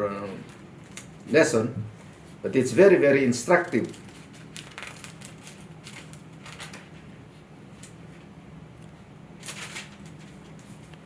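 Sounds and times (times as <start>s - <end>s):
steady low hum: 0.0s - 11.0s
paper pages rustling: 3.6s - 7.1s, 9.4s - 11.0s.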